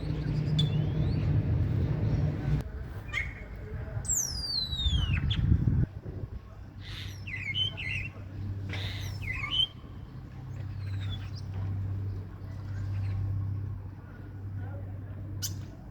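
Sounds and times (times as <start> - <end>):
low rumble: 0.0 - 2.9.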